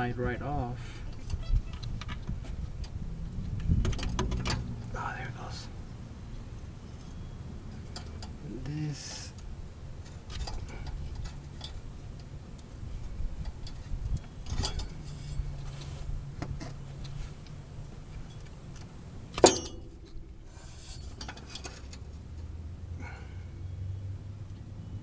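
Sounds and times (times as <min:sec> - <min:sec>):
low steady hum: 0:00.0 - 0:25.0
metal parts clicking and clinking: 0:13.4 - 0:15.5
ringing metal clank: 0:19.4 - 0:20.3.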